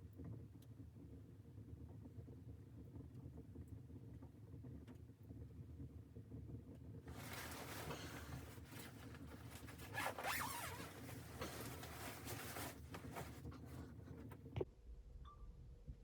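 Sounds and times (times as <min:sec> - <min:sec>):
zipper being pulled: 0:07.1 - 0:13.8.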